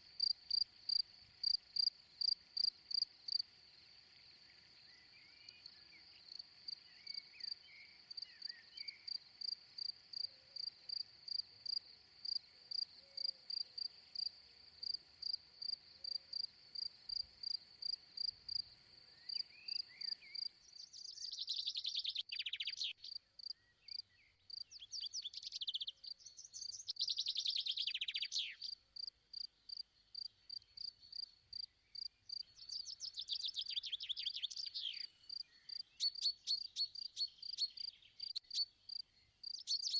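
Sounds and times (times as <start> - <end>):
insects chirping: 0.0 - 39.9.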